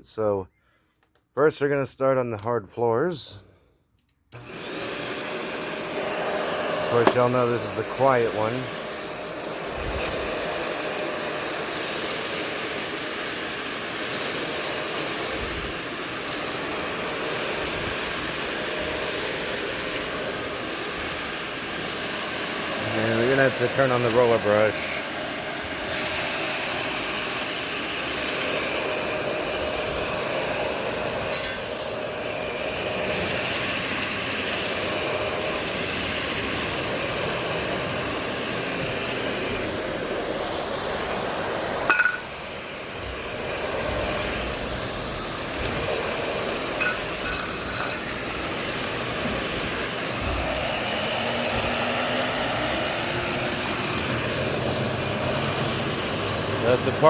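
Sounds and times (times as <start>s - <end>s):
upright vacuum running: 4.3s - 57.0s
debris clinking in vacuum: 31.2s - 32.0s, 41.9s - 42.6s, 44.1s - 51.9s.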